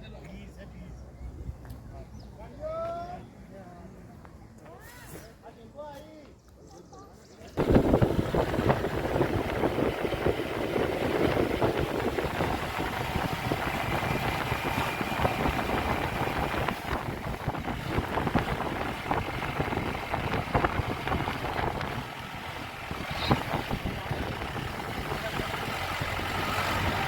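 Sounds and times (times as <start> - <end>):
vehicle engine and road noise: 7.6 - 27.0
wind on microphone: 7.6 - 27.0.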